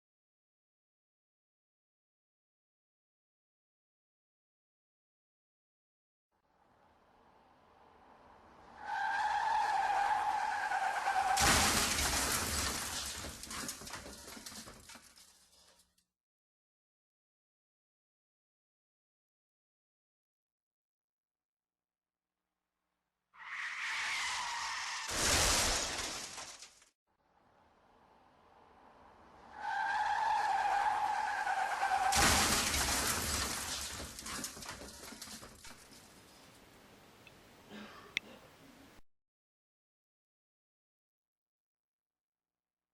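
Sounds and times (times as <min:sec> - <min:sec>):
tyre screech: 0:08.8 - 0:11.5, 0:23.4 - 0:25.4, 0:29.5 - 0:35.2
car crash with shattering debris: 0:10.1 - 0:15.5, 0:24.9 - 0:26.8, 0:29.8 - 0:35.8.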